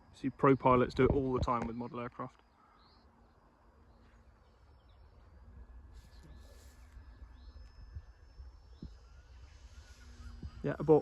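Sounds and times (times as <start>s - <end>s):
faint high bird chirps: 0.0s - 11.0s
wind rumble on microphone: 6.2s - 11.0s.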